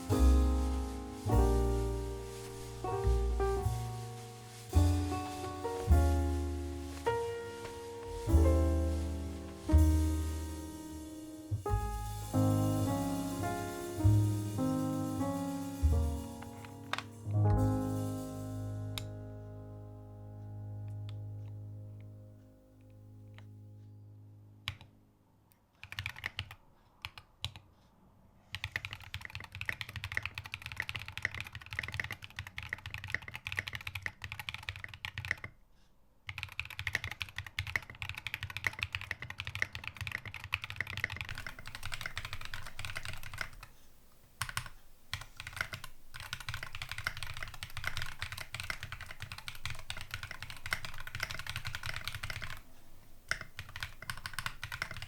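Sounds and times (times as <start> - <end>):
mechanical keyboard typing: 25.8 - 27.6, 28.5 - 35.5, 36.3 - 43.7, 44.4 - 52.6, 53.3 - 55.0.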